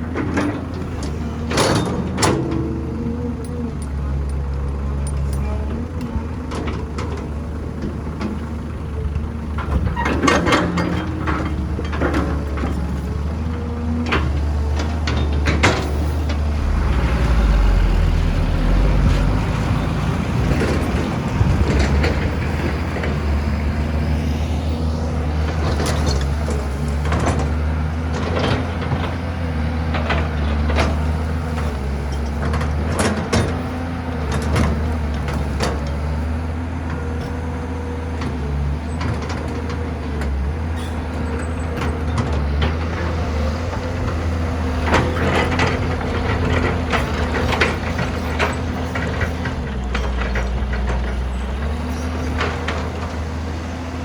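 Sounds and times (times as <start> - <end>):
heavy diesel engines running: 0.0 - 54.0.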